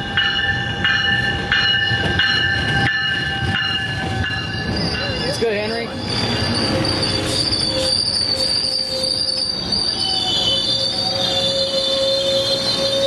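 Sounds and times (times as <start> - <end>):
rumble of moving train: 0.0 - 13.0
train wheels squealing: 2.6 - 13.0
lower squealing tone: 2.8 - 13.0.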